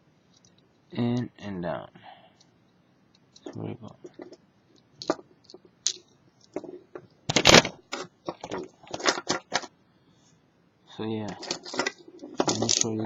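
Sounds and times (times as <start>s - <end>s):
metal handcuffs clicking and rattling: 11.3s - 13.0s.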